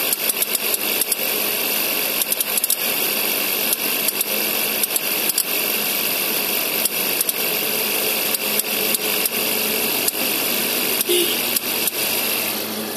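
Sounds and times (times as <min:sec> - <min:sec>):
sharp irregular clicks: 0:00.0 - 0:01.3, 0:02.0 - 0:03.0, 0:03.6 - 0:05.7, 0:06.6 - 0:12.4
car engine running: 0:00.5 - 0:12.9.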